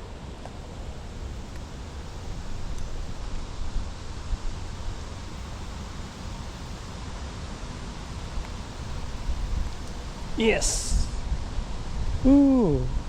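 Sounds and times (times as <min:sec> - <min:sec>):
wind buffeting microphone: 0:08.0 - 0:13.0.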